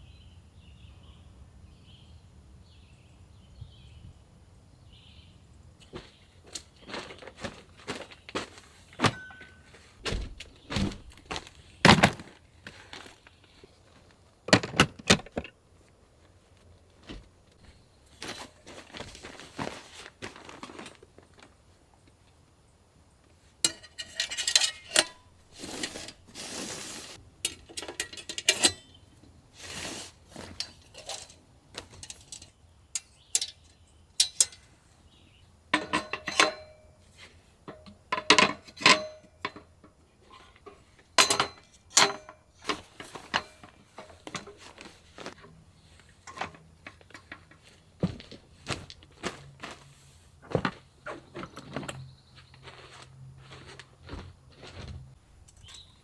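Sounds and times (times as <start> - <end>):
metal cookware clinking: 9.0 - 9.7, 23.6 - 26.5, 27.4 - 29.0, 30.5 - 34.7, 35.7 - 37.0, 37.7 - 44.7.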